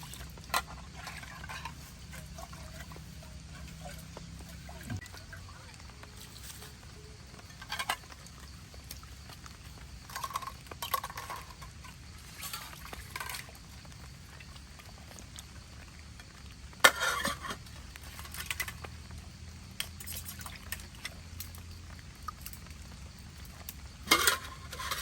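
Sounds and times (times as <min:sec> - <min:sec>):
utensil scraping in a pot: 0:00.0 - 0:05.2, 0:06.0 - 0:13.6, 0:16.8 - 0:18.9, 0:24.0 - 0:25.0.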